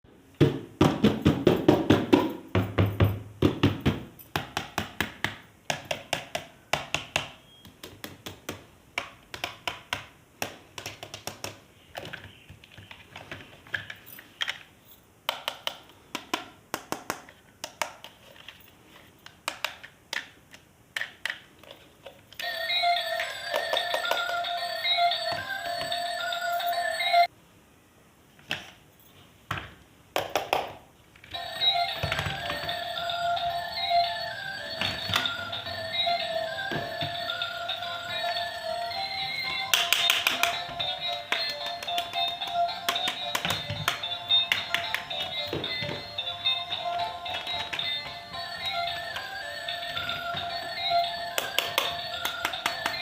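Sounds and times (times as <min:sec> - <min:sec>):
plastic toys clicking and tapping: 0:04.3 - 0:14.7, 0:15.3 - 0:18.6, 0:19.2 - 0:22.5, 0:23.2 - 0:24.5, 0:39.4 - 0:53.0
electronic melody: 0:22.4 - 0:27.3, 0:31.4 - 0:53.0.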